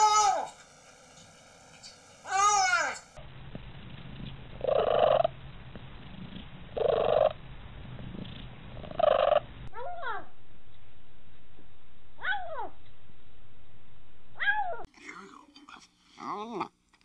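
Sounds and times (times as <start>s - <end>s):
cat purring: 4.2s - 9.6s.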